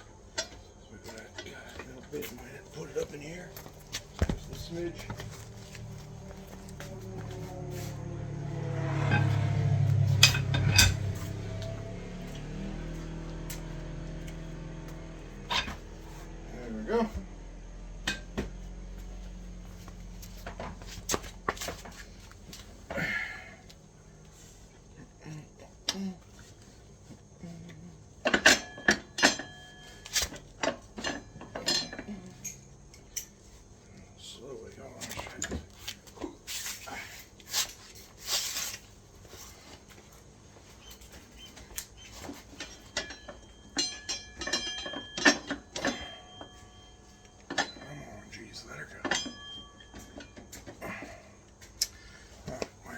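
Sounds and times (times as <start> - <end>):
steady low hum: 0.0 - 52.9
metal tools clinking: 8.4 - 12.4, 15.3 - 16.3, 28.2 - 33.6, 40.8 - 52.7.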